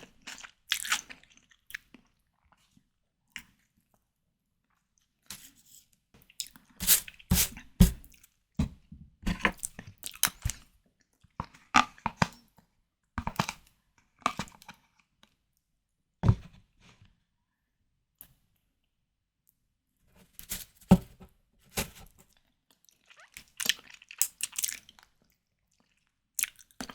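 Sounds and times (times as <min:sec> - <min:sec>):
person chewing and biting: 0:23.5 - 0:25.1.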